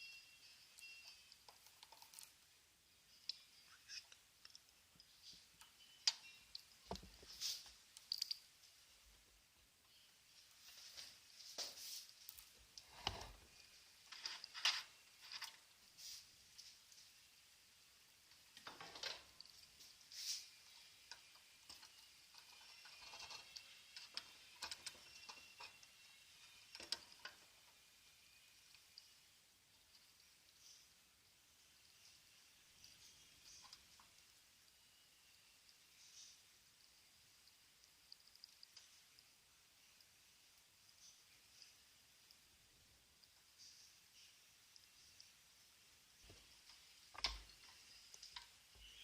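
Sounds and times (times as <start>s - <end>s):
soldering flux sizzling: 0.0s - 49.0s
faint clicks and taps: 3.1s - 8.8s, 35.3s - 42.5s, 46.2s - 49.0s.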